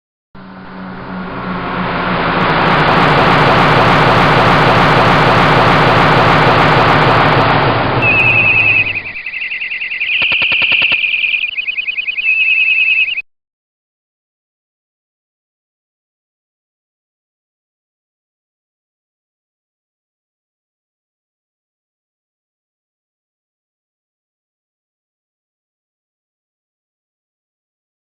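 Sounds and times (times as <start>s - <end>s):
vehicle engine running: 0.4s - 9.2s
high rapidly pulsing chirp: 8.0s - 13.2s.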